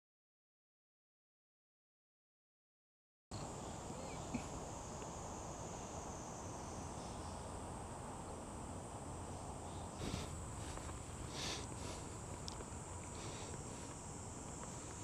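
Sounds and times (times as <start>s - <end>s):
cicadas buzzing: 3.3s - 15.0s
faint outdoor background noise: 3.3s - 15.0s.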